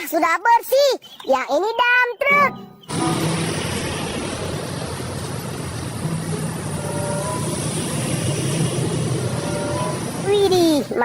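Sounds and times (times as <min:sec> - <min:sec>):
running water rushing: 0:02.9 - 0:10.9.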